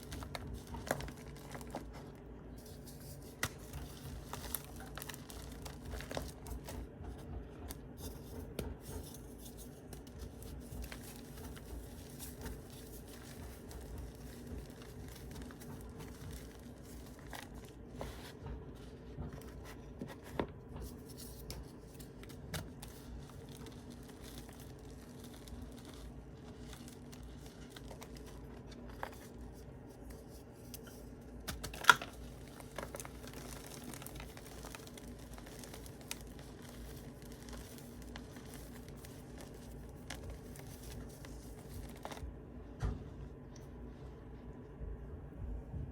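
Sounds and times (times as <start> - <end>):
chalk crunching and crackling: 20.9 - 31.2, 32.1 - 42.3.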